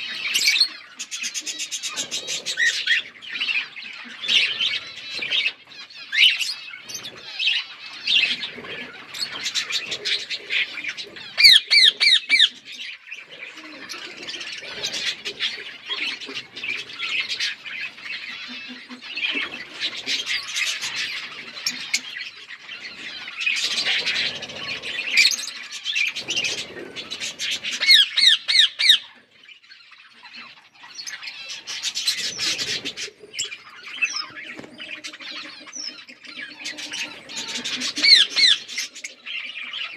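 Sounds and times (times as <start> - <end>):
parrots chirping and squawking: 0.0 - 39.9.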